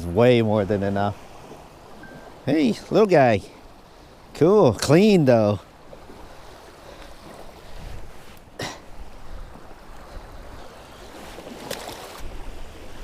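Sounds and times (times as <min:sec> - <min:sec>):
waves lapping: 0:00.0 - 0:13.0
wind on microphone: 0:07.1 - 0:13.0.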